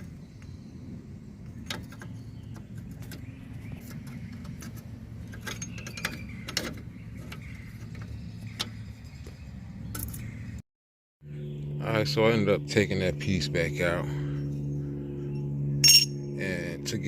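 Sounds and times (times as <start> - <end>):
steady low hum: 0.0 - 10.6, 11.2 - 17.0.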